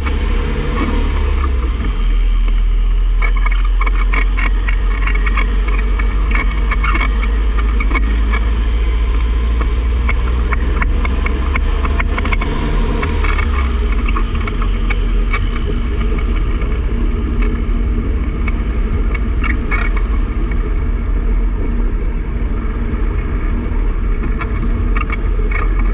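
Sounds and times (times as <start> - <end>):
car road and wind rumble: 0.0 - 25.9
cv joint clicking and knocking: 9.1 - 20.6.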